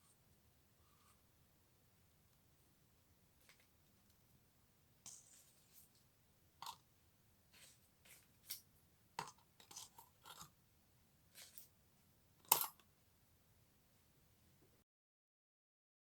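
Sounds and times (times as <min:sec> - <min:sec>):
small objects tapping and rustling: 0:05.1 - 0:06.8, 0:07.5 - 0:10.6.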